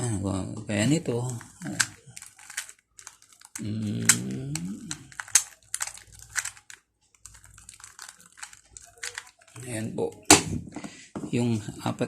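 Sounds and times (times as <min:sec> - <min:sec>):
rubik's cube clicking: 0:01.3 - 0:09.6
wordless voice gliding in pitch: 0:03.6 - 0:05.0.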